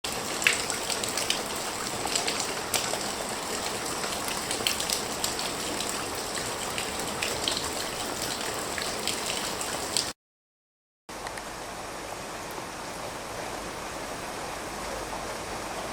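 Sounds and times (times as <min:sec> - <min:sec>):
water drips ticking: 0:00.1 - 0:10.1
soft rain pattering: 0:00.1 - 0:10.2.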